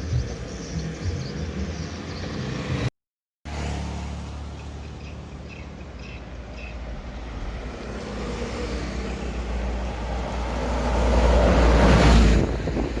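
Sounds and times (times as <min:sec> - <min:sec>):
heavy vehicle engine passing: 0:03.5 - 0:13.0.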